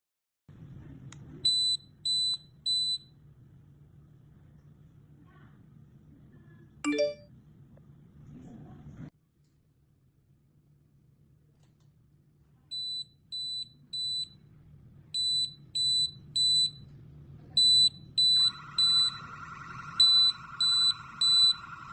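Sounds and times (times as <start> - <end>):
smoke detector alarm beeps: 1.5 - 3.1, 12.7 - 14.4, 15.2 - 16.9, 17.6 - 21.9
steady lower hum: 18.2 - 21.9.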